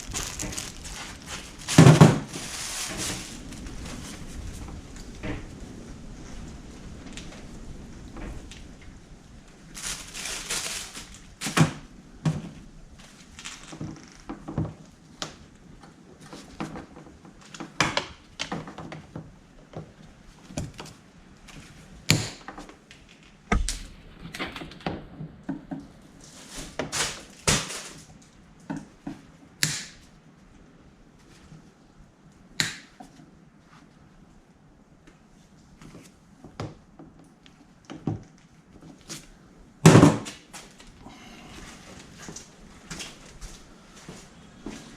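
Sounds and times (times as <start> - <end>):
loud thunks: 23.5 - 24.7.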